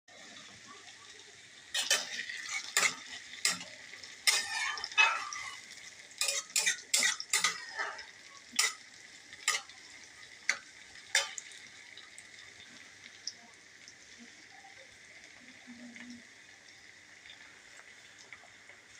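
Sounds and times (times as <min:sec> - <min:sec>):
food sizzling in a frying pan: 0:00.1 - 0:18.9
metal spoon scraping a pan: 0:01.7 - 0:09.8, 0:10.5 - 0:11.5
spoon clinking against pan: 0:01.8 - 0:05.6, 0:06.2 - 0:08.8, 0:09.4 - 0:09.7, 0:10.5 - 0:11.5.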